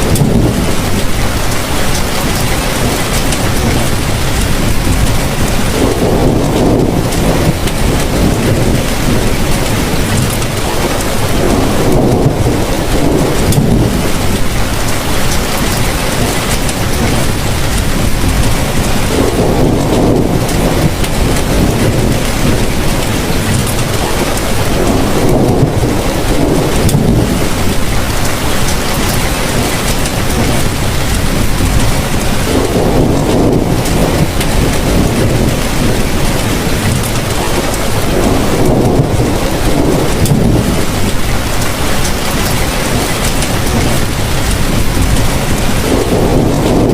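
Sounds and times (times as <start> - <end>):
heavy rain pouring: 0.0 - 46.9
low rumbles: 0.0 - 46.9.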